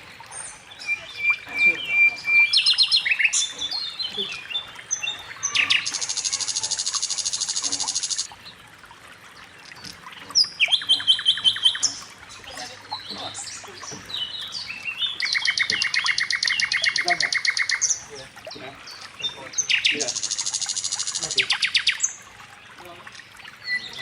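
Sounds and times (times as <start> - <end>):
bird chirps: 0.3 - 8.3, 9.6 - 22.2
bird high trills: 0.7 - 8.3.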